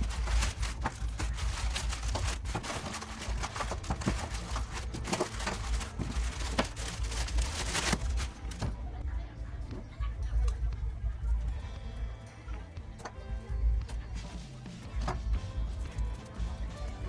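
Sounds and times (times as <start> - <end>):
packaging crinkling and rustling: 0.0 - 8.8.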